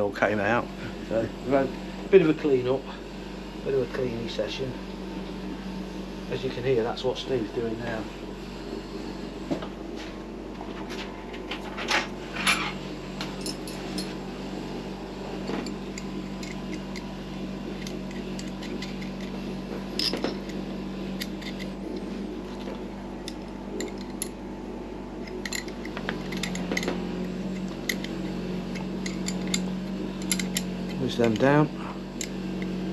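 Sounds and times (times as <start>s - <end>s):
steady low hum: 0.0s - 32.9s
metal clinking and scraping: 13.4s - 14.2s, 15.4s - 24.4s, 25.2s - 32.8s.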